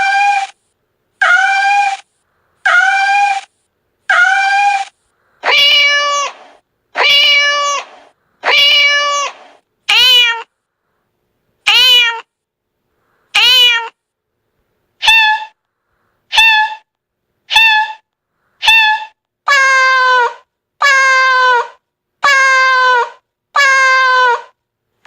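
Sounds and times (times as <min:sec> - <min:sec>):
cat meowing: 0:00.0 - 0:00.6, 0:01.2 - 0:02.0, 0:02.7 - 0:03.5, 0:04.1 - 0:10.5, 0:11.7 - 0:12.3, 0:13.3 - 0:14.0, 0:15.0 - 0:15.6, 0:16.3 - 0:16.9, 0:17.5 - 0:18.0, 0:18.6 - 0:24.5.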